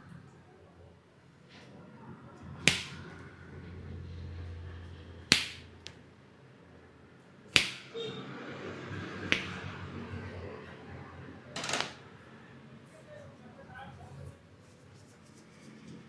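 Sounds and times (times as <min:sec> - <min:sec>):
hands slapping head: 0:02.7 - 0:03.1, 0:05.3 - 0:05.8, 0:07.6 - 0:08.0, 0:09.3 - 0:09.7.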